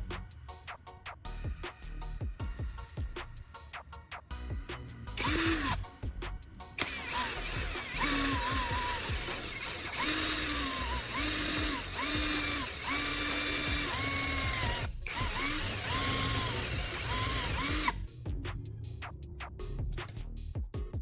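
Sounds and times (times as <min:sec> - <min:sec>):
power tool motor whine: 0:05.2 - 0:05.8, 0:06.8 - 0:18.0.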